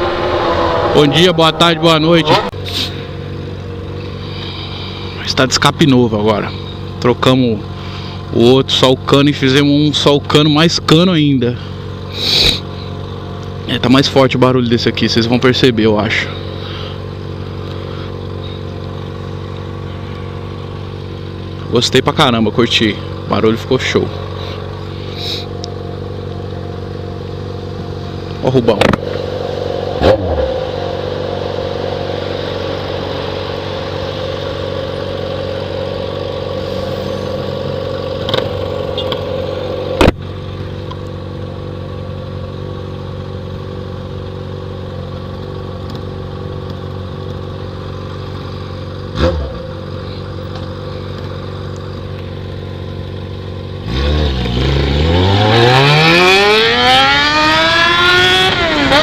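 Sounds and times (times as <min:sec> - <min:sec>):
motorcycle engine revving: 0:00.0 - 0:05.2, 0:27.8 - 0:40.6, 0:48.9 - 0:51.4, 0:53.1 - 0:59.0.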